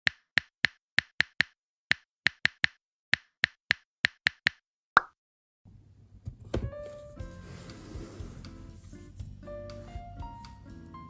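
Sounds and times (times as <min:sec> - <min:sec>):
thump: 0:06.2 - 0:07.0
soft music: 0:06.2 - 0:11.0.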